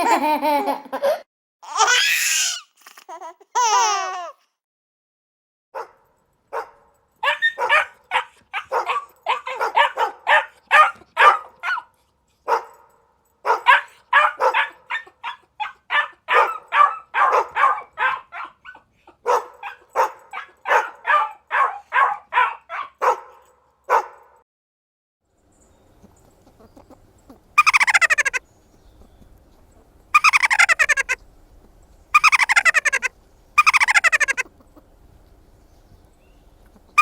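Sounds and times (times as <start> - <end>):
dog barking: 5.8 - 11.9, 12.5 - 24.4.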